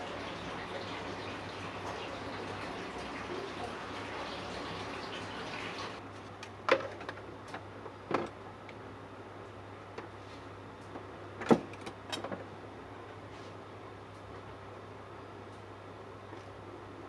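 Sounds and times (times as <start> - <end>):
running water hissing: 0.0 - 6.0.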